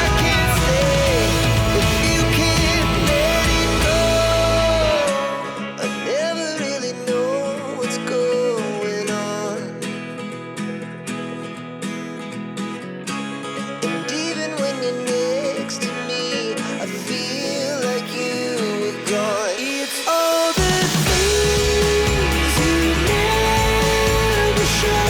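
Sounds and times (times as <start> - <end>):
person singing: 0.0 - 9.7, 14.1 - 25.0
strummed guitar: 0.0 - 25.0
steady beat: 20.6 - 25.0.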